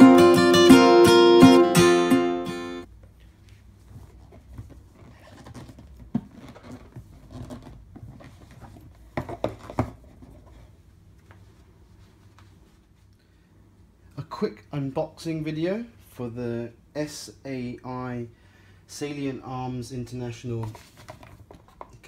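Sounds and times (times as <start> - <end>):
acoustic guitar music: 0.0 - 2.9.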